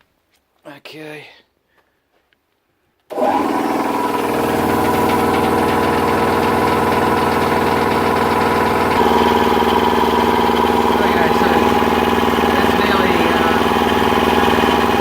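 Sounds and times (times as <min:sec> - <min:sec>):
air compressor running: 0:03.1 - 0:15.0.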